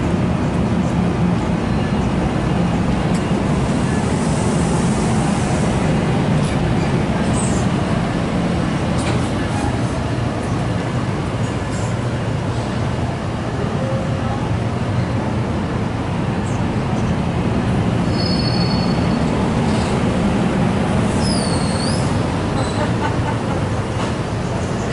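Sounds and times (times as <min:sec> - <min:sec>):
train rumbling: 0:00.0 - 0:24.9.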